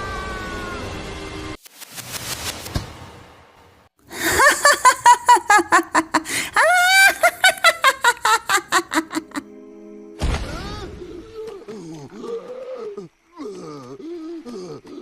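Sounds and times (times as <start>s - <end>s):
hiss of noise: 1.2s - 3.1s
cartoon voice laughing rapidly: 4.2s - 9.4s.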